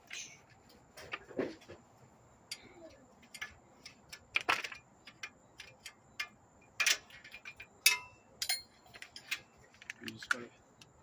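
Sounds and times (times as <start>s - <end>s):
metallic clinks: 5.1s - 9.5s.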